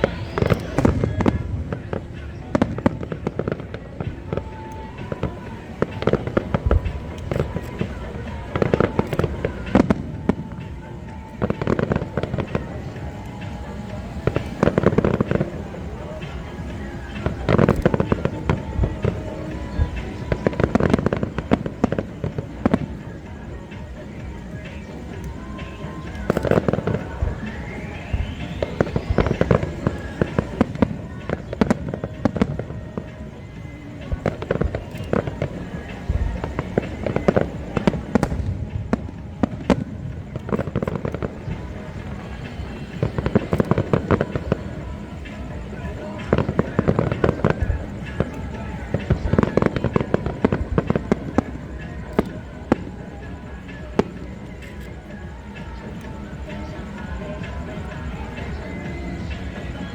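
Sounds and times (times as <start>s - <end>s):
fireworks bangs and crackles: 0.0s - 59.9s.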